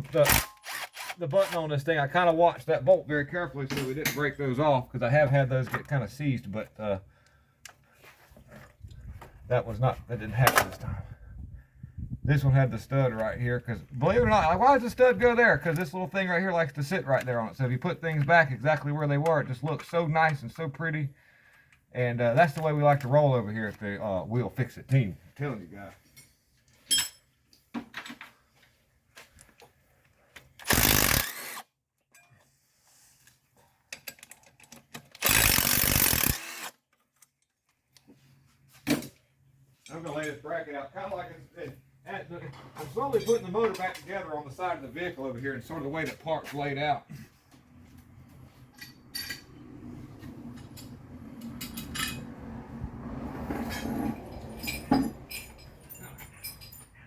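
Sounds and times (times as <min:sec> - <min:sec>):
metal parts and tools clattering: 0:00.0 - 0:01.2, 0:26.1 - 0:27.3, 0:30.6 - 0:31.5, 0:33.9 - 0:37.6, 0:48.7 - 0:49.5, 0:50.6 - 0:52.3, 0:53.7 - 0:57.0
hand tool removing bolts: 0:00.0 - 0:01.8, 0:30.4 - 0:31.6, 0:33.9 - 0:37.4
metal tools clicking: 0:00.1 - 0:01.5, 0:30.6 - 0:31.6, 0:33.9 - 0:37.6.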